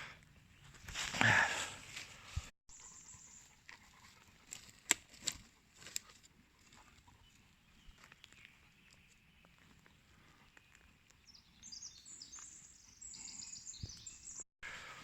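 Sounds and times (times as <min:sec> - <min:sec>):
brush crackling: 0:00.7 - 0:02.5, 0:03.7 - 0:06.9
bird singing high chirps: 0:10.5 - 0:14.4.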